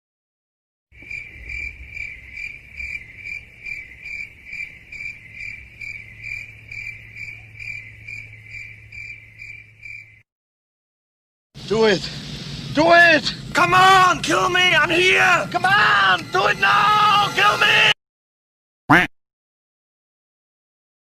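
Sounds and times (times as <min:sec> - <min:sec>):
cricket chirping: 0:01.0 - 0:10.2.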